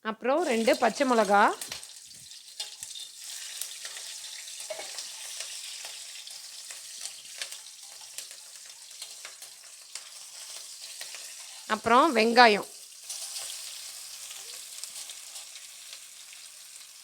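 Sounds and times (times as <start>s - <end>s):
spices sizzling in hot oil: 0.0s - 17.0s
oil crackles and pops: 0.4s - 11.8s, 12.7s - 17.0s.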